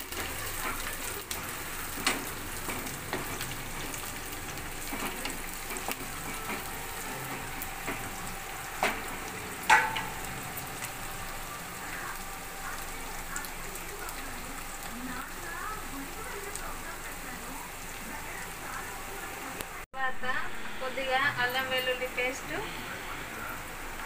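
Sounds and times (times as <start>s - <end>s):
onions sizzling in hot oil: 0.0s - 24.0s
utensil knocking against pan: 9.7s - 10.2s.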